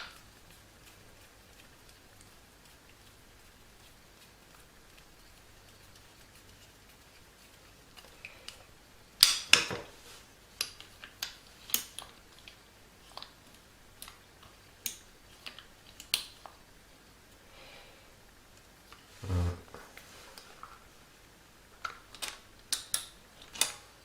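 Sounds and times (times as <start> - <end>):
short low-pitched sound: 19.2 - 19.7.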